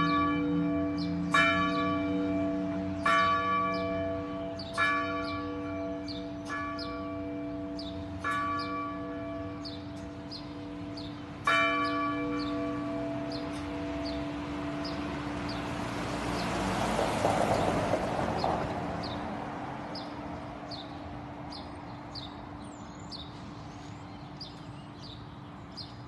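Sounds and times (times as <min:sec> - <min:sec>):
church bell ringing: 0:00.0 - 0:16.4
vehicle passing: 0:12.8 - 0:21.6.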